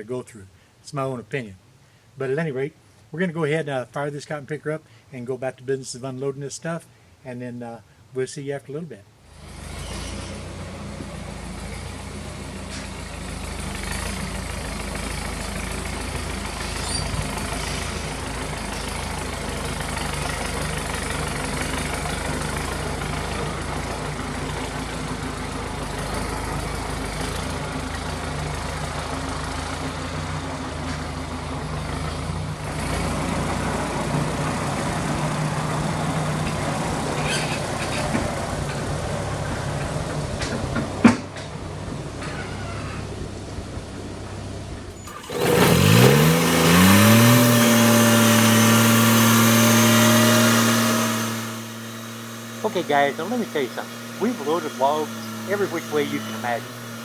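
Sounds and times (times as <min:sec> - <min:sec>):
diesel engine running: 0:09.3 - 0:57.0.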